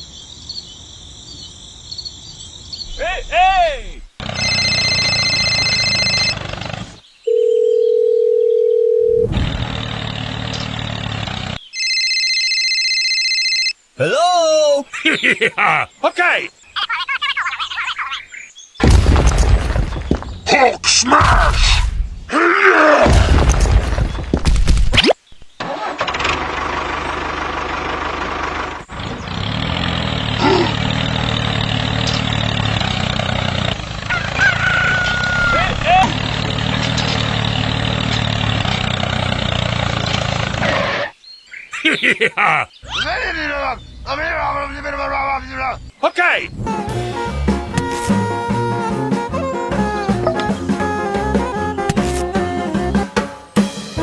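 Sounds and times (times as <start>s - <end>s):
small tractor engine running: 4.2s - 7.0s, 9.3s - 11.6s, 25.6s - 40.9s
steady dial tone: 4.3s - 6.4s, 7.3s - 9.3s, 11.8s - 13.7s.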